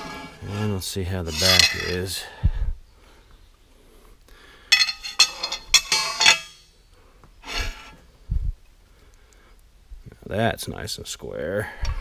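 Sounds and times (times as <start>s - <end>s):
metal square clinking on metal plate: 1.3s - 2.0s, 4.7s - 6.7s.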